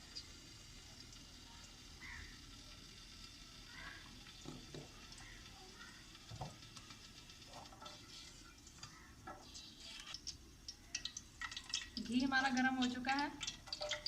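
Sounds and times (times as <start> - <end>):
ghee crackling in a pan: 0.0 - 14.0.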